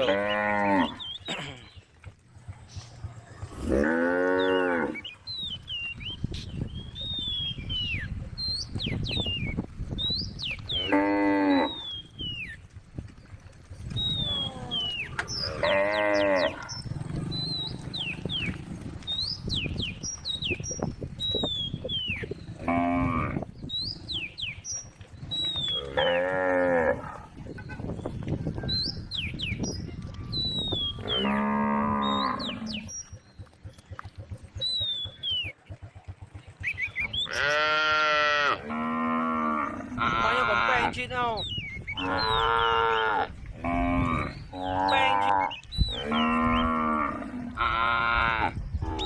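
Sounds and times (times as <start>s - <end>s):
cows mooing: 0.0s - 1.7s, 3.0s - 5.3s, 10.6s - 12.2s, 14.1s - 19.1s, 22.5s - 24.5s, 25.4s - 27.4s, 30.7s - 33.1s, 37.2s - 41.0s, 41.9s - 49.0s.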